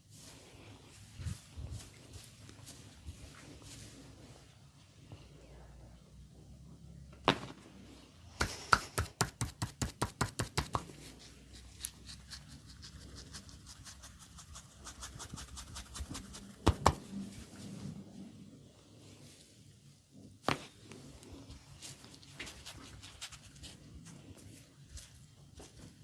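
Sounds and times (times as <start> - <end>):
hands striking body: 8.4 - 10.9, 16.7 - 17.0.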